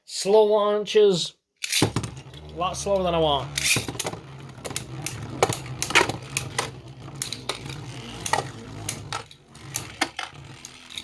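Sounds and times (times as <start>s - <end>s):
low whirr of spinning tops: 1.8s - 11.0s
spinning tops clashing: 3.5s - 11.0s.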